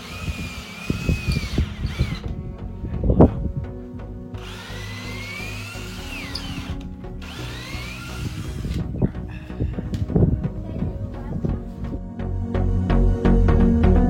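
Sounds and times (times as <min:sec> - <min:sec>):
power drill whining: 0:00.0 - 0:02.4, 0:04.4 - 0:09.1
background music: 0:00.0 - 0:14.0.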